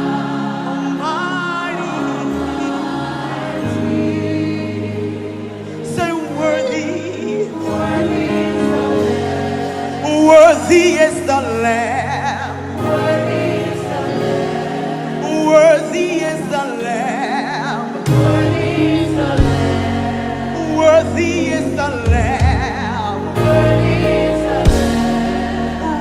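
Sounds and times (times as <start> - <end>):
choir voices: 0.0 - 26.0
person singing with vibrato: 0.0 - 26.0
sustained chords: 0.0 - 26.0.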